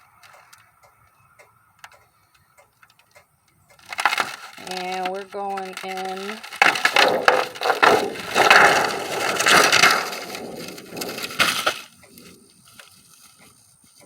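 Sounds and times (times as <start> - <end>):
plastic panel crackling and scraping: 3.7 - 14.0.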